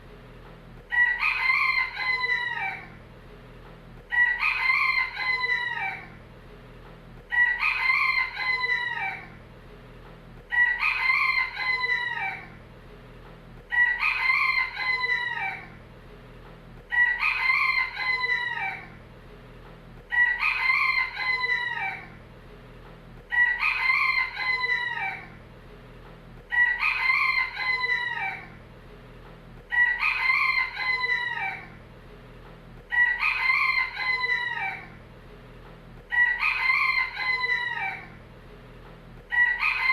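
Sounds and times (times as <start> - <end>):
rooster crowing: 0.9 - 3.0, 4.1 - 6.2, 7.3 - 9.4, 10.5 - 12.6, 13.7 - 15.8, 16.9 - 19.0, 20.1 - 22.2, 23.3 - 25.4, 26.5 - 28.6, 29.7 - 31.8, 32.9 - 35.0, 36.0 - 38.2, 39.3 - 39.9.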